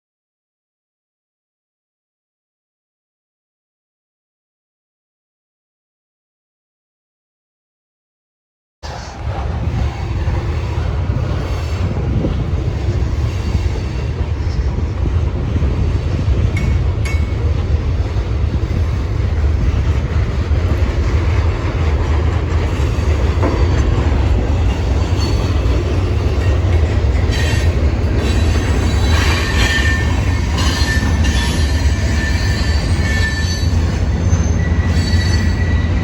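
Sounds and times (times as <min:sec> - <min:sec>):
train rumbling past: 0:08.8 - 0:36.0
faint high wheel squeal: 0:27.3 - 0:36.0.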